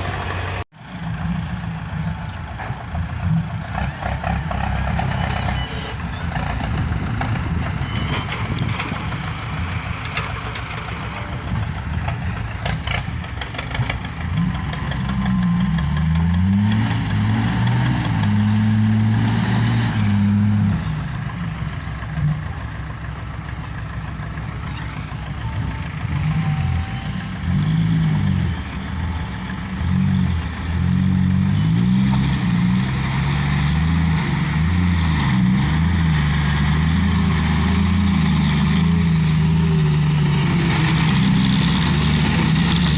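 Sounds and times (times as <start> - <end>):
vehicle engine revving: 3.1 - 42.9.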